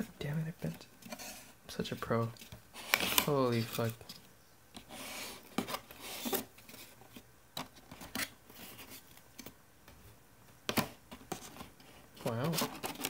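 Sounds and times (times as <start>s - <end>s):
packaging rustles: 2.4s - 4.2s, 11.1s - 13.0s.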